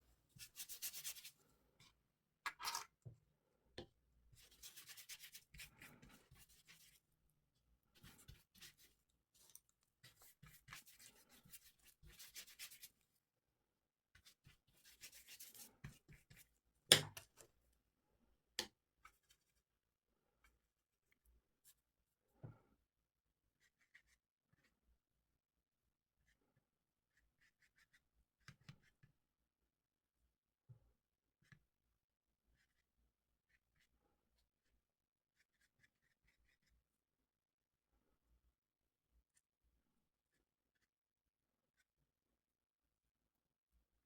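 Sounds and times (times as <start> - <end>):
brush scratching on paper: 0.4 - 1.4, 4.4 - 7.1, 8.0 - 13.0, 14.2 - 16.5, 23.6 - 24.7, 27.1 - 29.0, 32.5 - 32.9, 35.4 - 37.0.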